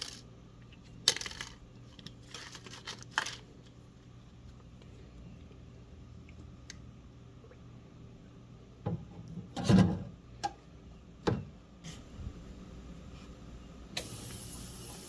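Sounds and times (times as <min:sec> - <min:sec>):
small metal parts knocking and clicking: 0:14.0 - 0:15.0.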